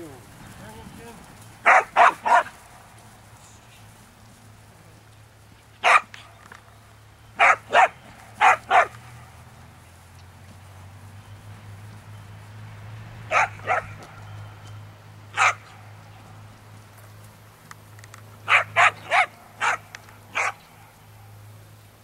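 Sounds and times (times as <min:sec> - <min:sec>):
dog barking: 0:01.6 - 0:02.6, 0:05.8 - 0:06.2, 0:07.4 - 0:09.0, 0:13.3 - 0:14.0, 0:15.3 - 0:15.8, 0:18.5 - 0:20.6.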